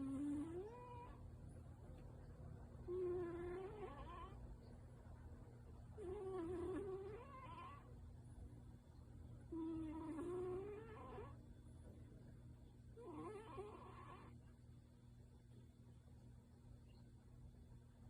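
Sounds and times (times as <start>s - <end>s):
cat's nose whining while breathing: 2.9s - 4.4s, 6.0s - 7.9s, 9.5s - 11.4s, 13.0s - 14.4s.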